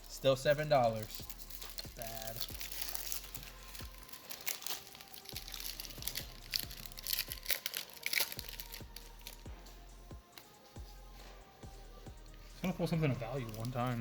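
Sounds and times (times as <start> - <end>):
foil wrapper crinkling and tearing: 0.0 - 9.5, 13.1 - 14.0.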